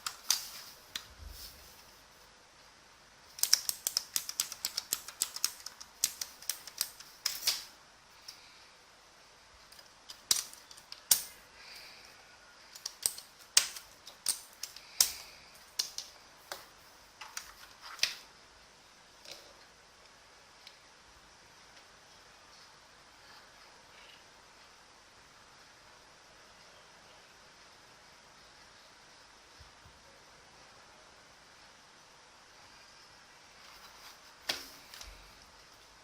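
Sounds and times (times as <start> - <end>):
clicky keyboard keystrokes: 3.4 - 7.6.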